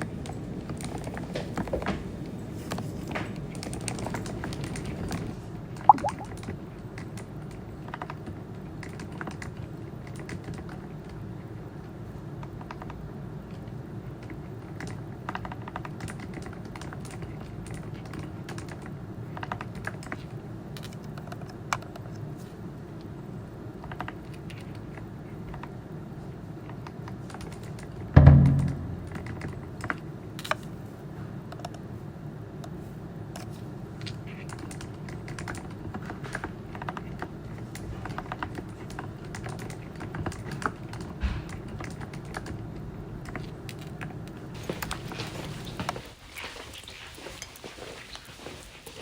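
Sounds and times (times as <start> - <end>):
loud thump: 28.2 - 29.8
low background sound: 28.2 - 30.4.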